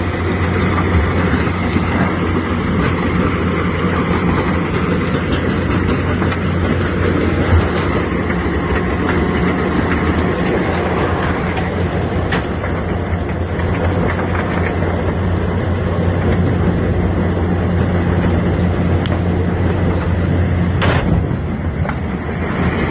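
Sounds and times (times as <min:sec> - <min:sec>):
crushing machine drone: 0:00.0 - 0:22.9.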